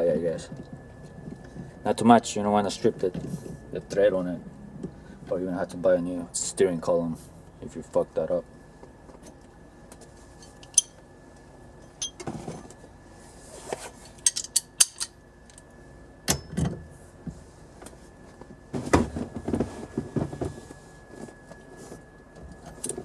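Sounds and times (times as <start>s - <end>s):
metal tools clicking and knocking: 10.4s - 10.9s, 14.2s - 15.1s
tools rattling: 11.8s - 12.7s, 14.2s - 15.1s.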